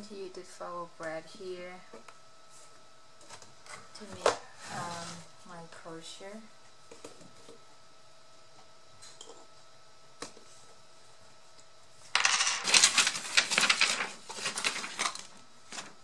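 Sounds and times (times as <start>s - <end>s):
faint steady hum: 0.0s - 16.0s
small metal pieces clattering: 12.2s - 15.2s.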